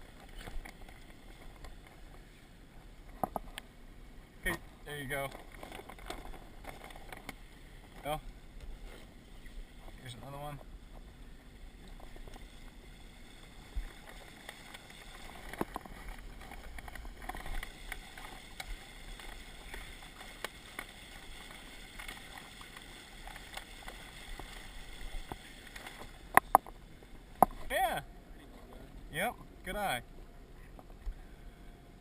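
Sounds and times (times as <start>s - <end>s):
low steady hiss: 0.0s - 32.0s
sailcloth rustling and crinkling: 5.0s - 27.8s.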